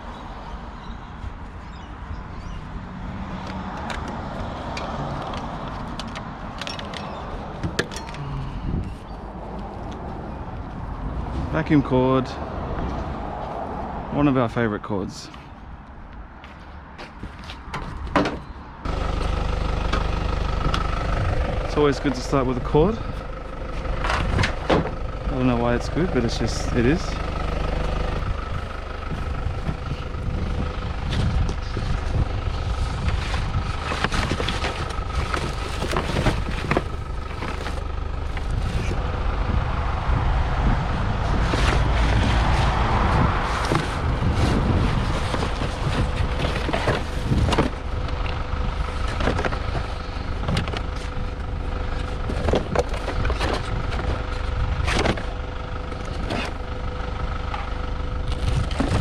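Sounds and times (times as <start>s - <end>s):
vehicle engine running: 18.8s - 59.0s.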